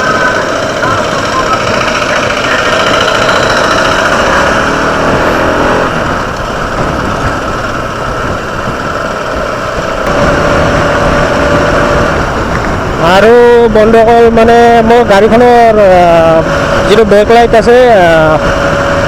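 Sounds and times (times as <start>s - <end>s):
motorcycle engine running: 0.0s - 19.0s
road and wind noise: 0.0s - 19.0s.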